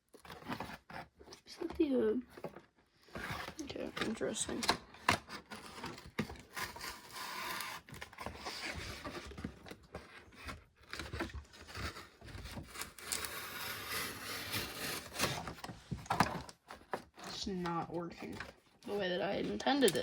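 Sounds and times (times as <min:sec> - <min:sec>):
knife scraping cardboard: 0:00.2 - 0:01.7, 0:05.0 - 0:17.5.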